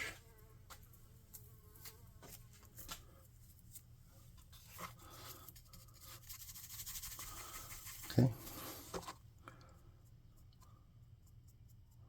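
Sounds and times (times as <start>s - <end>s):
makeup brush scrubbing: 5.8s - 9.0s.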